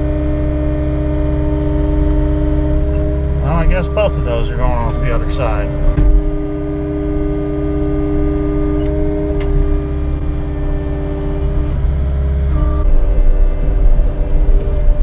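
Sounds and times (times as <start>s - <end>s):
diesel engine rumble: 0.0s - 6.2s, 9.4s - 13.0s
steady humming tones: 0.0s - 8.4s, 9.6s - 12.9s.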